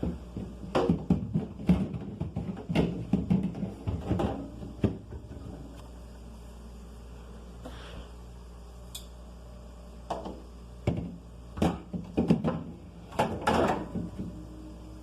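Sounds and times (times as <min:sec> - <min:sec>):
containers and fridge parts clattering: 0:00.0 - 0:05.8, 0:10.1 - 0:14.4
low room hum: 0:00.0 - 0:15.0.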